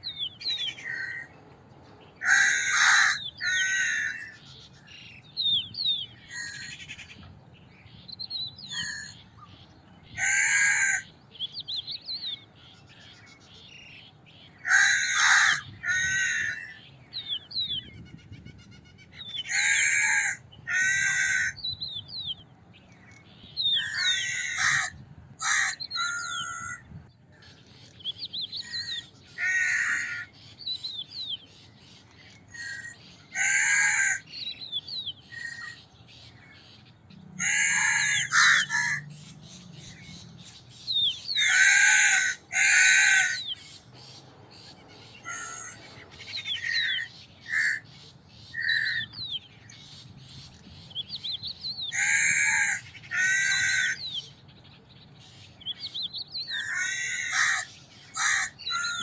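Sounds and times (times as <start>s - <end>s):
small birds chirping: 0.0s - 59.0s
crows cawing: 0.8s - 1.3s, 2.2s - 4.6s, 6.3s - 7.1s, 8.7s - 9.2s, 10.1s - 11.2s, 14.6s - 16.9s, 19.2s - 21.7s, 23.7s - 26.8s, 28.6s - 30.4s, 32.5s - 34.5s, 37.4s - 39.2s, 41.3s - 43.6s, 45.2s - 45.9s, 46.5s - 47.9s, 51.8s - 54.2s, 56.4s - 59.0s.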